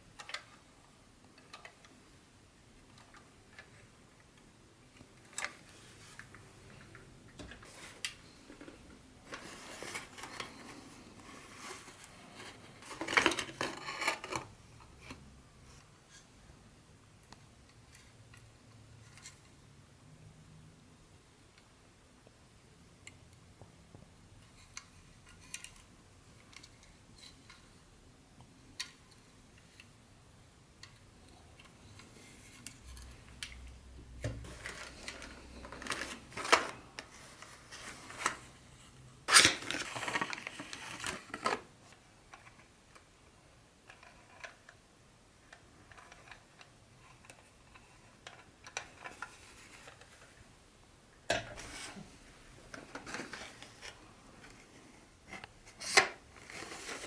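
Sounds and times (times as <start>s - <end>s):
packaging rustling: 34.4s - 38.5s, 39.3s - 41.7s.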